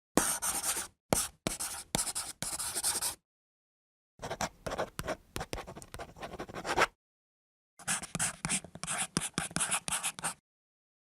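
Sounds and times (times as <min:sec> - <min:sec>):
pen scratching on paper: 0:00.2 - 0:03.2, 0:04.2 - 0:06.9, 0:07.8 - 0:10.4.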